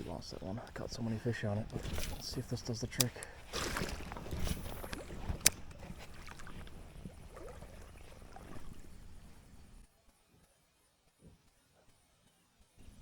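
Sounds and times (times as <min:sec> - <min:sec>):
moving water: 0:00.0 - 0:09.9
sharp click: 0:02.9 - 0:03.3.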